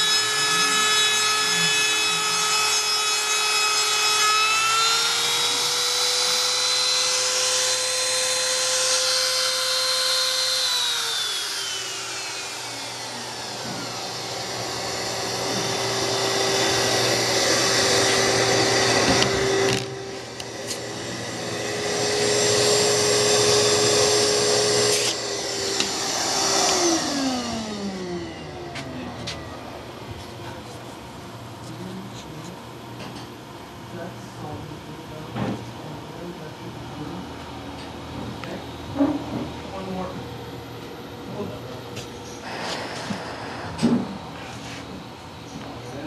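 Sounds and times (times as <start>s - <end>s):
spindle motor whining: 0.0s - 30.2s
hiss of cutting carbon fiber: 42.4s - 44.8s.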